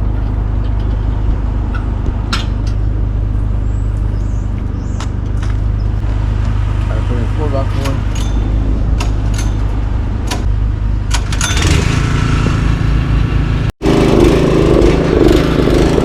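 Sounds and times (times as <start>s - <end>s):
sharp knocks and rattles: 0.0s - 3.2s, 7.8s - 12.6s
truck engine under load: 0.0s - 16.0s.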